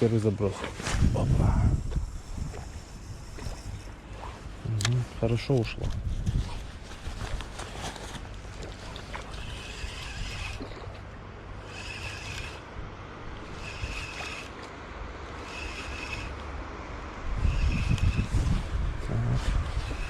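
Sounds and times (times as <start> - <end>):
wind rumble on microphone: 0.0 - 20.0
fishing reel whirring: 1.8 - 4.4, 7.0 - 16.6, 17.2 - 18.8, 19.5 - 20.0.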